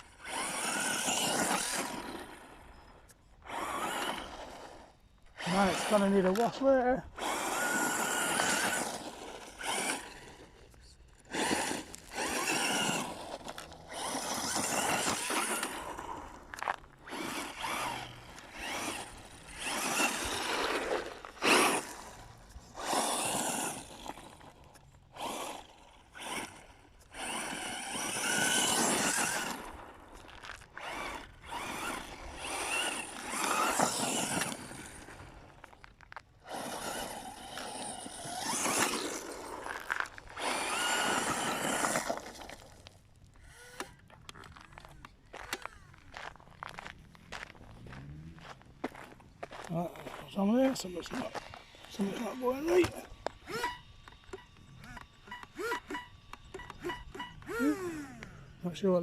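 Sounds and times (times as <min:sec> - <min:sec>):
rc buggy motor whining: 0:00.0 - 0:59.0.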